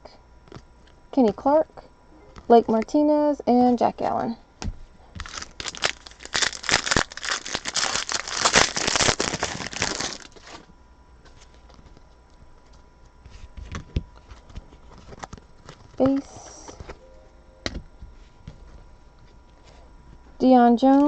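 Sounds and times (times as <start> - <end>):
foil wrapper tearing and crinkling: 5.2 - 10.7.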